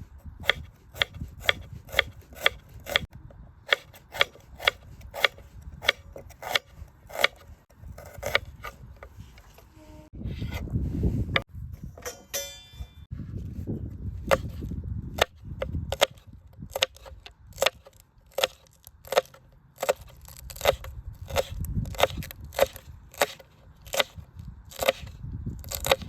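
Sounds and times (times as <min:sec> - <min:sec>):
blade chopping wood: 0:00.4 - 0:03.1, 0:03.7 - 0:09.1, 0:14.3 - 0:26.0.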